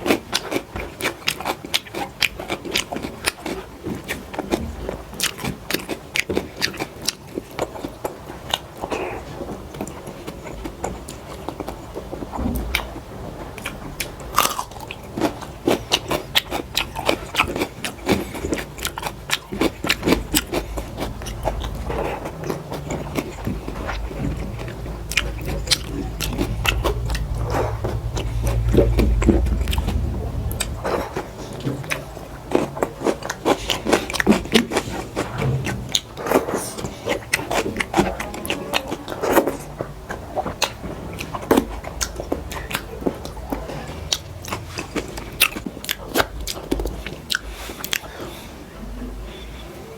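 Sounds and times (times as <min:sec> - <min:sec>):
person chewing food: 0:00.0 - 0:48.4
low rumble: 0:18.8 - 0:47.6.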